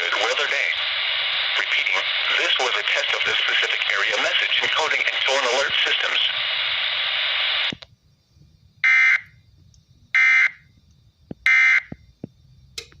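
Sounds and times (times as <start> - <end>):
short bursts of data tones: 8.8 - 9.3, 10.2 - 10.6, 11.4 - 11.9.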